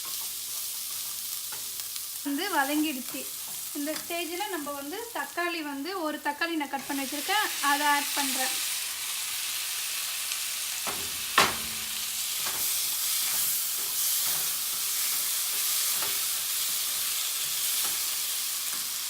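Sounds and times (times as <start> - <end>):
vegetables sizzling in hot oil: 0.0 - 19.0
spoon scraping and knocking pan: 10.8 - 18.2.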